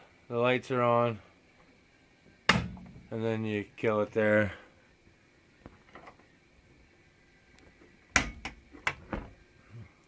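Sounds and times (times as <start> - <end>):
sharp clicks and knocks: 7.6 - 9.3.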